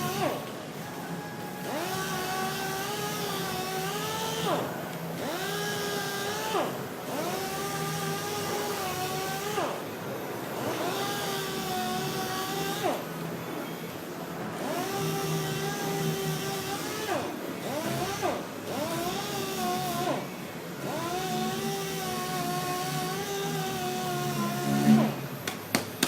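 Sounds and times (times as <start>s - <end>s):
sander whining: 0.0s - 9.8s, 14.5s - 25.3s.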